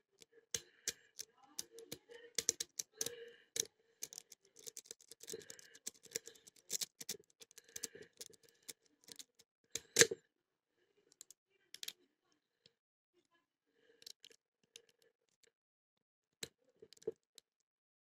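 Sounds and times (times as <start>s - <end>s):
lock pick clicking in padlock: 4.0s - 10.2s.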